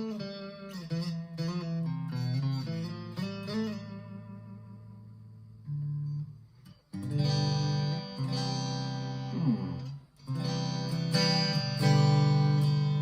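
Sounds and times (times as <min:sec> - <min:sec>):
clean electric guitar chords: 0:07.0 - 0:11.2.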